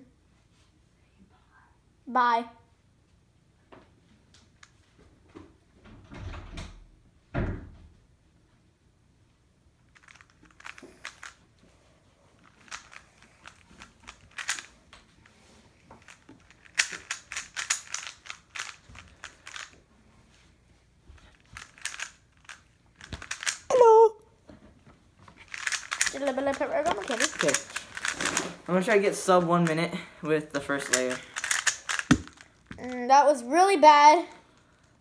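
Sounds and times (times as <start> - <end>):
speed cube clicking turns: 10.0 - 11.4, 12.4 - 14.7, 16.0 - 19.8, 21.4 - 23.7, 25.5 - 29.8, 30.6 - 33.0
dull thumps: 31.9 - 32.9.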